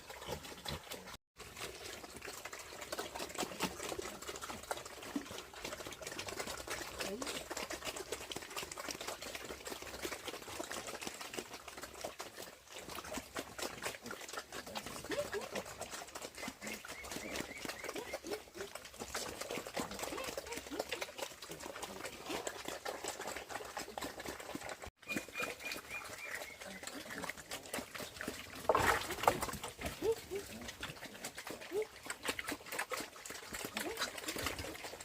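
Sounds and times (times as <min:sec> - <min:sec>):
farm animals calling: 0:14.7 - 0:18.7, 0:21.9 - 0:33.2.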